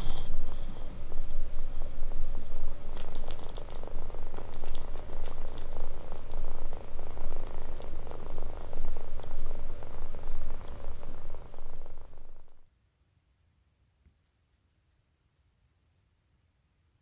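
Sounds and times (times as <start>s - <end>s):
kitten purring: 0.0s - 12.6s.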